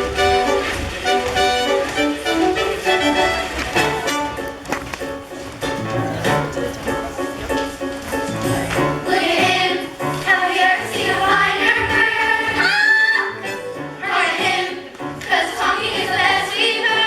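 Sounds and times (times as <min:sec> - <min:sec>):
backing music: 0:00.0 - 0:17.0
chorus singing a show tune: 0:08.3 - 0:17.0.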